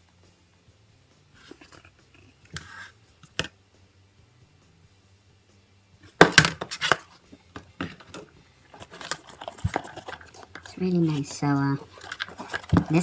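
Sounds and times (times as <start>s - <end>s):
bag rustling: 8.7s - 13.0s.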